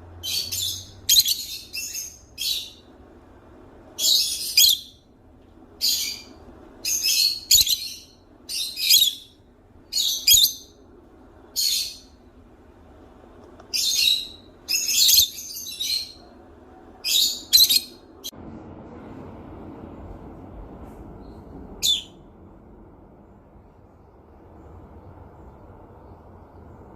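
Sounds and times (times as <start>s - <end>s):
parrot calling: 0.2s - 2.9s, 4.0s - 5.0s, 5.8s - 10.8s, 11.5s - 12.2s, 13.7s - 16.3s, 17.0s - 18.3s, 21.8s - 22.2s.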